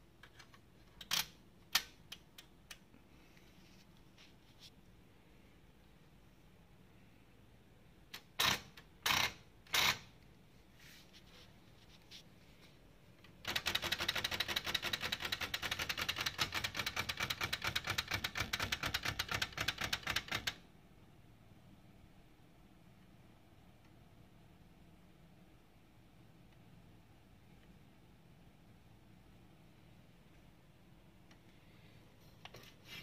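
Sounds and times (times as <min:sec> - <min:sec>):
manual typewriter typing: 0:08.2 - 0:10.1, 0:13.2 - 0:20.6.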